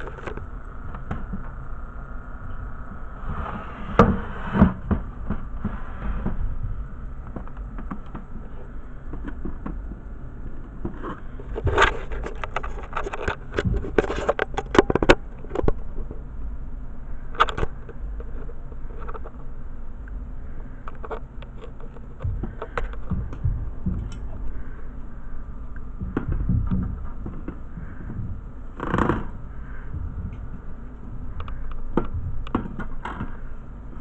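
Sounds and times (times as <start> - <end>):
handling clicks taps and scrapes: 0.0 - 1.6, 10.6 - 16.2, 17.3 - 19.5, 20.8 - 24.7, 26.0 - 33.5
steady low hum: 0.0 - 34.0.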